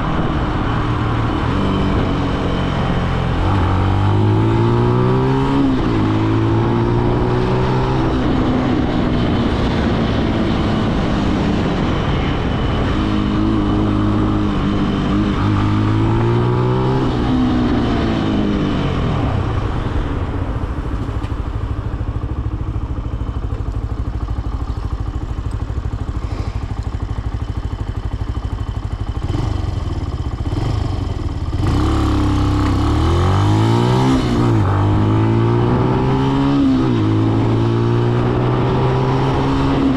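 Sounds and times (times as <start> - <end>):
motorcycle engine revving: 0.0 - 39.9.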